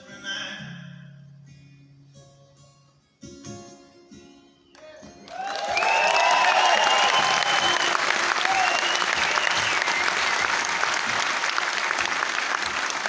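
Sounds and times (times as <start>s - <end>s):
audience applause: 5.3s - 13.0s
long whistle: 5.5s - 11.4s.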